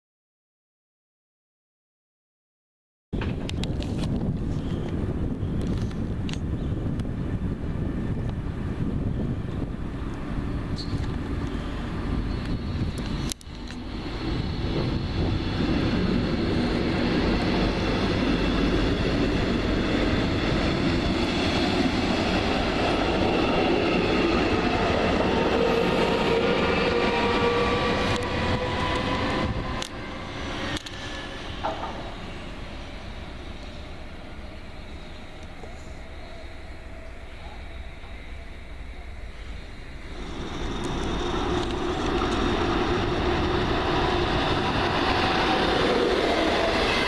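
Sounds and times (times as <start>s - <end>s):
train rolling on tracks: 3.2s - 47.0s
faint rising whine: 26.9s - 47.0s.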